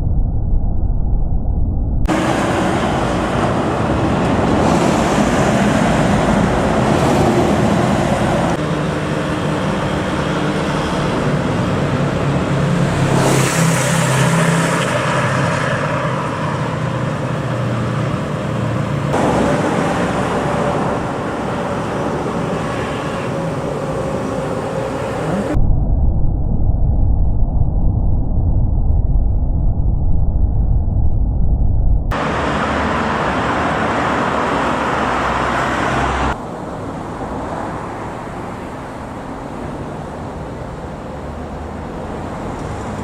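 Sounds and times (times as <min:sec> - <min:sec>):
deep engine drone: 0:00.0 - 0:15.0, 0:16.2 - 0:36.4
road traffic passing: 0:02.1 - 0:25.6, 0:32.1 - 0:43.0
vehicle rushing close by: 0:02.1 - 0:25.6, 0:32.1 - 0:43.0.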